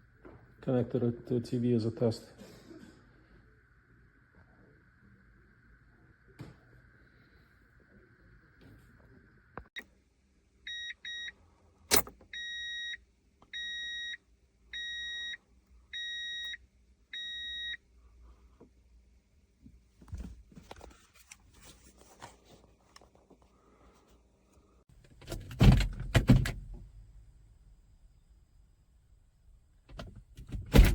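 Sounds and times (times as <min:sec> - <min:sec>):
sharp click: 0:11.9 - 0:12.1
rustling and clattering handling noise: 0:19.7 - 0:24.2.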